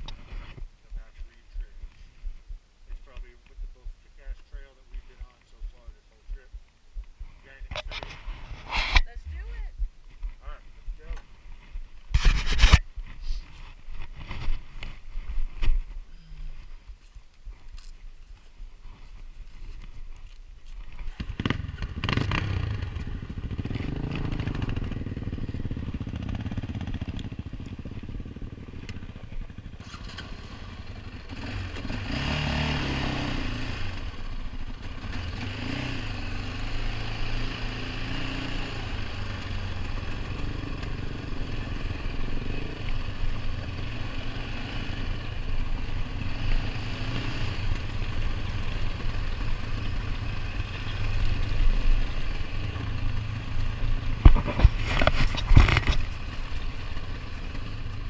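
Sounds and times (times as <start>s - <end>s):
atv engine running: 18.6s - 58.0s.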